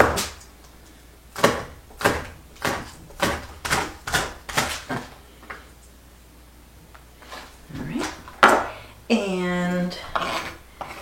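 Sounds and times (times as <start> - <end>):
knife chopping on cutting board: 1.4 - 5.1.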